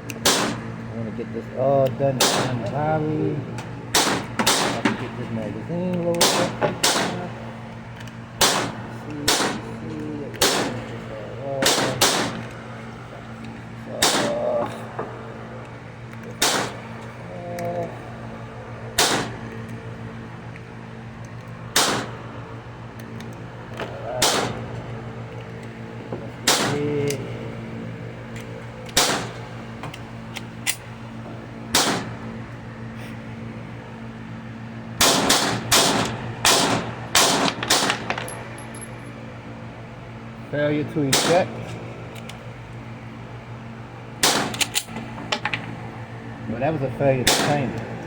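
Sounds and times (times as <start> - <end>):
steady low hum: 0.0 - 48.0
pistol shots: 0.2 - 0.6, 2.2 - 2.6, 3.9 - 4.8, 6.2 - 7.2, 8.4 - 9.6, 10.4 - 10.8, 11.6 - 12.4, 14.0 - 14.4, 16.4 - 16.8, 19.0 - 19.4, 21.8 - 22.1, 24.2 - 24.6, 26.4 - 27.0, 29.0 - 29.4, 31.7 - 32.1, 35.0 - 38.2, 41.1 - 41.5, 44.2 - 44.7, 47.2 - 47.7.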